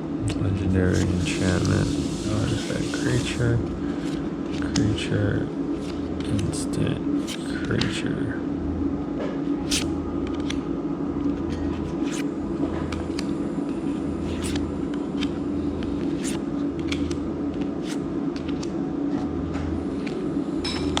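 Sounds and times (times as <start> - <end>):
steady low hum: 0.0 - 21.0
cards clicking and snapping: 4.0 - 5.0, 5.8 - 6.6, 7.2 - 8.0, 9.6 - 10.7, 11.5 - 12.3, 14.3 - 19.3, 20.0 - 20.2.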